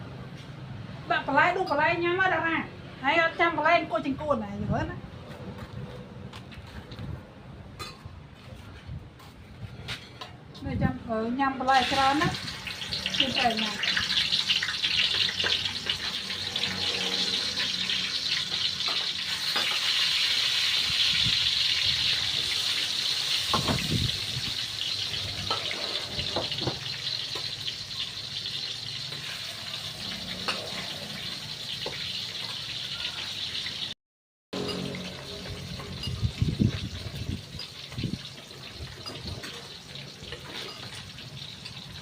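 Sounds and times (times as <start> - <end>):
fish sizzling in hot oil: 11.7 - 34.0, 34.6 - 42.0.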